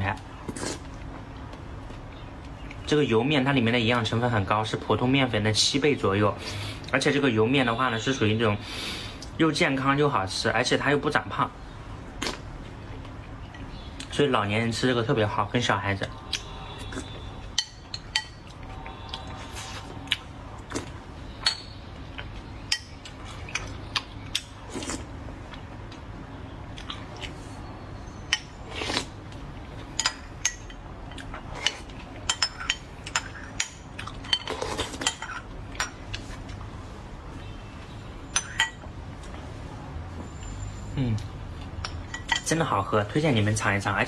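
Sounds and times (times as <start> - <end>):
eating sounds: 0.2 - 2.9, 12.0 - 14.2, 16.0 - 21.1, 21.8 - 27.6, 28.4 - 36.8
spoon and chopsticks clinking bowl: 16.4 - 18.6, 21.4 - 21.8, 22.7 - 23.0, 30.0 - 36.1, 38.3 - 38.9, 41.7 - 42.7.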